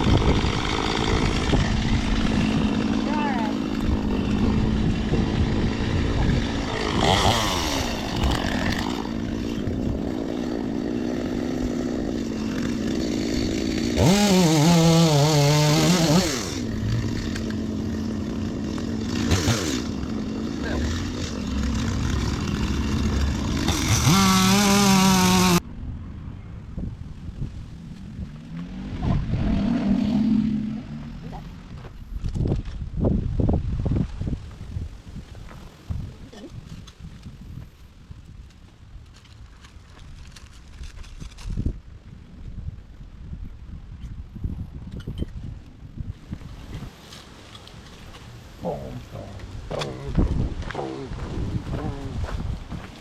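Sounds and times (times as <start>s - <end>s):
chainsaw idling and revving: 0.0s - 25.6s.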